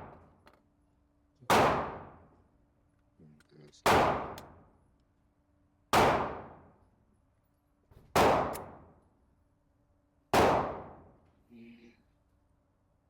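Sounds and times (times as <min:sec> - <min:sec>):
pistol shots: 0:01.5 - 0:02.2, 0:03.9 - 0:04.5, 0:05.9 - 0:06.6, 0:08.1 - 0:08.9, 0:10.3 - 0:11.0.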